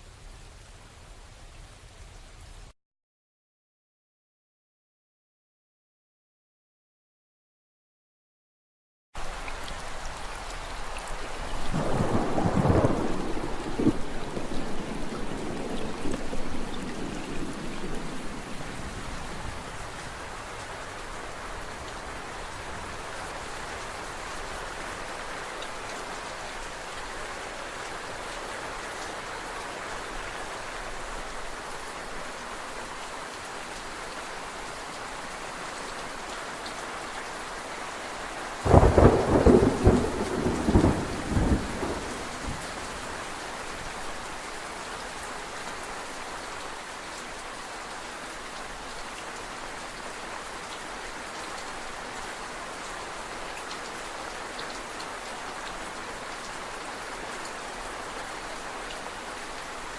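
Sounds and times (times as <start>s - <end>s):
rainfall hissing: 9.2s - 59.9s
low thunder rumble: 11.7s - 19.6s, 38.7s - 42.9s
loud thunderclap: 11.8s - 18.1s, 38.7s - 42.7s.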